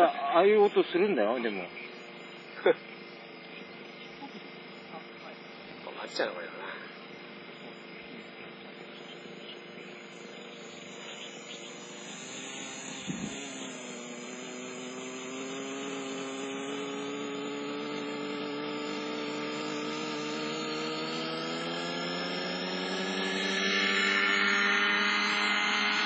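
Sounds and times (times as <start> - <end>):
model helicopter engine and rotor: 0.0 - 26.0.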